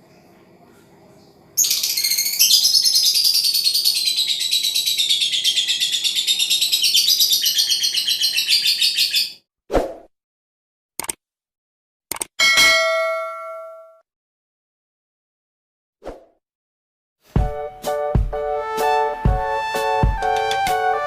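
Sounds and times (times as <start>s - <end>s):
lovebird chattering trill: 1.6s - 9.4s.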